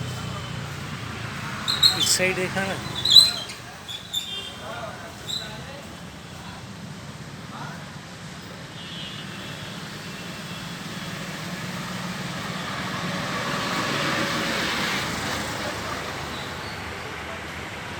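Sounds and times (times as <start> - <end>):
vehicle passing: 0.0 - 3.4, 10.7 - 16.6.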